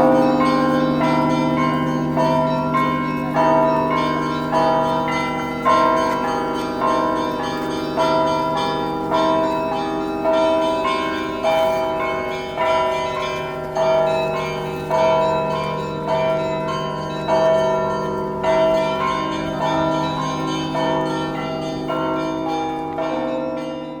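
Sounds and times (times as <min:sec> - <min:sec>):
church bells ringing: 0:00.0 - 0:24.0
deep humming bell tone: 0:00.0 - 0:24.0.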